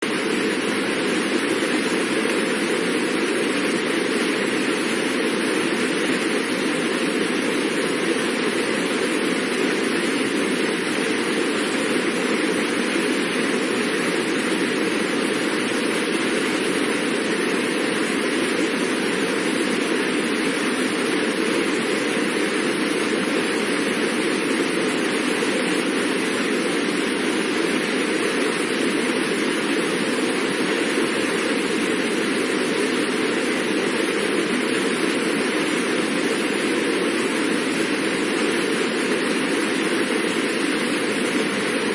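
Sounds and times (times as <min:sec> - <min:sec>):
fast water rushing: 0:00.0 - 0:41.9.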